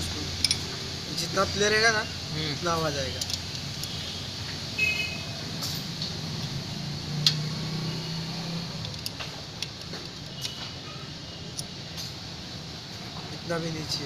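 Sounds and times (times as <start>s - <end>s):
metallic clicks of tools: 0.4s - 0.7s, 3.1s - 4.0s, 7.2s - 7.5s, 8.8s - 10.6s.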